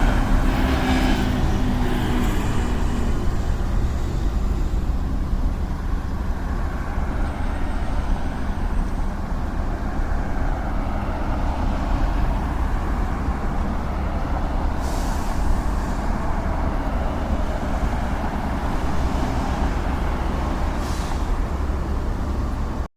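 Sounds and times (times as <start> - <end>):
street traffic rumble: 0.0 - 22.9
short sharp hisses: 14.8 - 16.0, 20.8 - 21.4.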